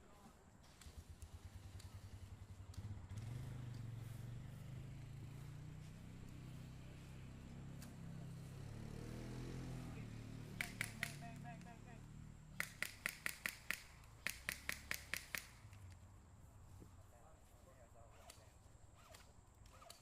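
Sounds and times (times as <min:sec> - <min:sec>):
airsoft gun shots: 0:10.6 - 0:11.4, 0:12.6 - 0:15.7.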